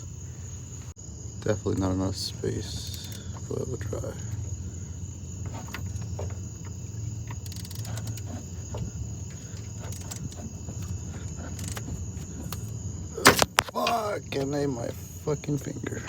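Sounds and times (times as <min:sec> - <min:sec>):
high trill like crickets: 0:00.0 - 0:16.0
steady low hum: 0:00.0 - 0:16.0
tools clicking on engine: 0:01.7 - 0:16.0.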